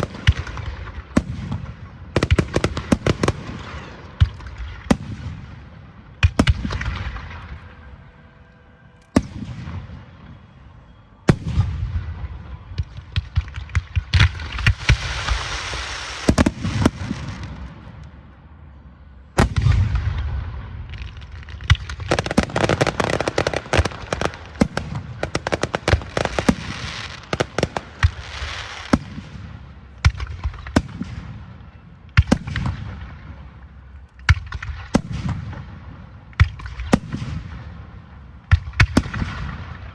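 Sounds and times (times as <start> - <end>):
fireworks bangs: 0.0 - 8.4, 11.3 - 18.0, 19.4 - 39.9
fireworks crackling: 0.0 - 10.5, 11.3 - 18.2, 19.4 - 39.9.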